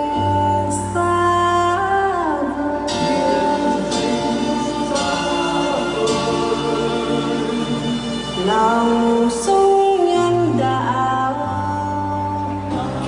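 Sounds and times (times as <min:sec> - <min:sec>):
choir singing held notes: 0:02.9 - 0:09.6.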